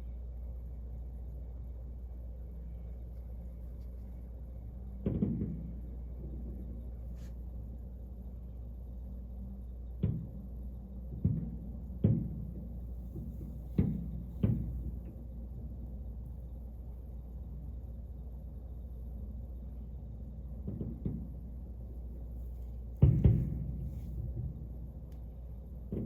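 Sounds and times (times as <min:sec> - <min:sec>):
steady low hum: 0:00.0 - 0:26.0
fireworks booming: 0:22.8 - 0:26.0.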